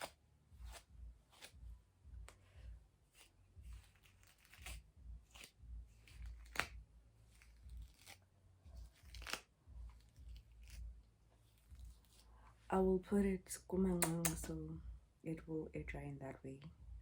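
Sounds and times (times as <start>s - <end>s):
hands rustling and crackling: 2.2s - 12.6s.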